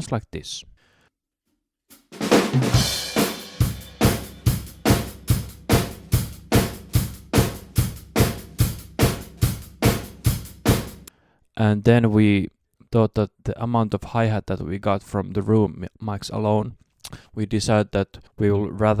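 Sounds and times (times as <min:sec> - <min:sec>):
drum kit beat: 0:01.9 - 0:11.1.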